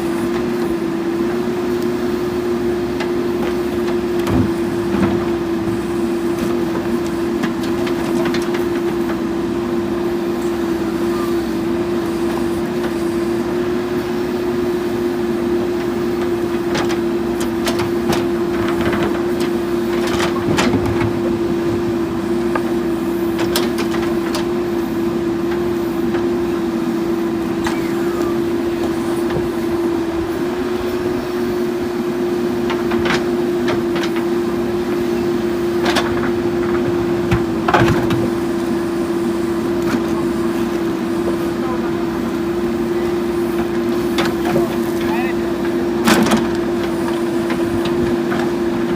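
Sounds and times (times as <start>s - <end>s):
diesel engine running: 0.0s - 48.9s
digging clanks and knocks: 15.8s - 22.7s, 23.3s - 24.6s, 43.6s - 48.9s.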